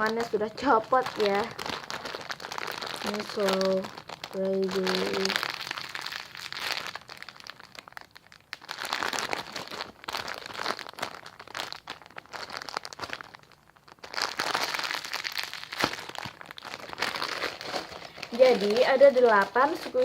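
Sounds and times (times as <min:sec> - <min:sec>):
foam toy crinkling rustle: 0:00.0 - 0:20.0.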